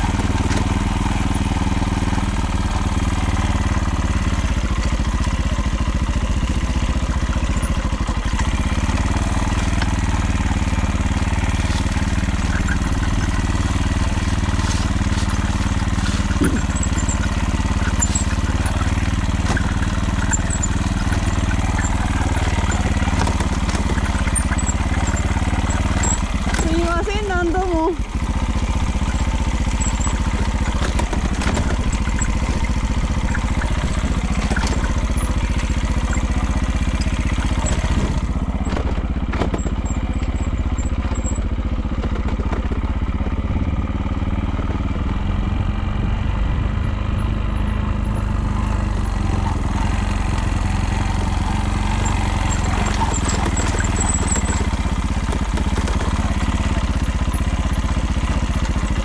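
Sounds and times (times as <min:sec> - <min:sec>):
rattling clatter: 0:00.0 - 0:59.0
small engine running: 0:00.0 - 0:59.0.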